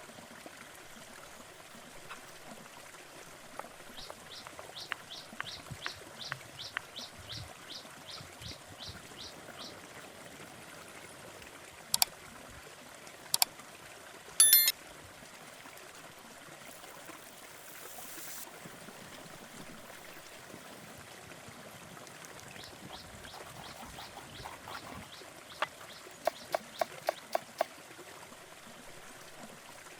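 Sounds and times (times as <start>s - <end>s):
ringing metal clink: 14.4s - 14.7s
short chirps: 14.4s - 14.7s
watery hiss: 16.6s - 20.9s
sharp taps: 25.6s - 27.7s.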